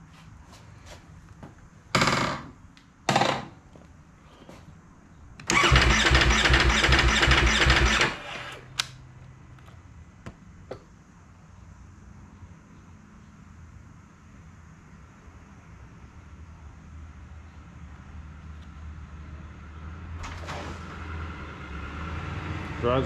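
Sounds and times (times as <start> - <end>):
motorcycle starter cranking: 5.4 - 8.9.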